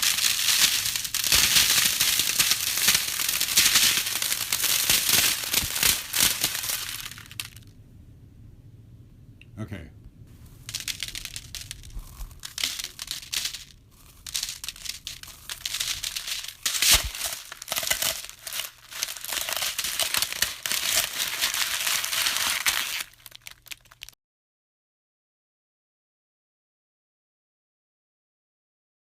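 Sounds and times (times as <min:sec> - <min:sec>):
material crinkling and crumpling: 0:00.0 - 0:07.6, 0:10.3 - 0:24.2.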